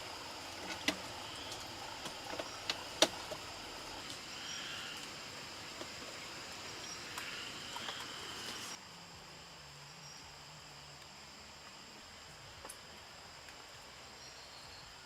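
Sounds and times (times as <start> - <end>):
hiss: 0.0 - 8.8
insects droning: 0.0 - 15.0.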